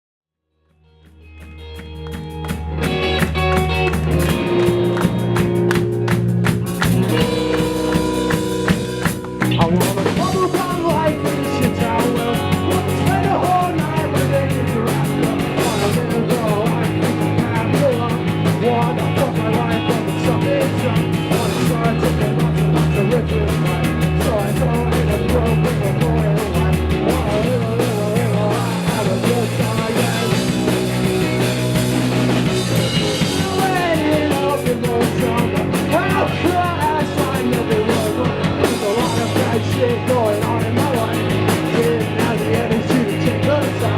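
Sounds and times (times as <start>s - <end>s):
bass guitar: 0.4s - 43.9s
electric guitar: 0.6s - 43.9s
drum kit: 1.0s - 43.9s
person singing: 7.1s - 30.8s, 33.1s - 43.9s.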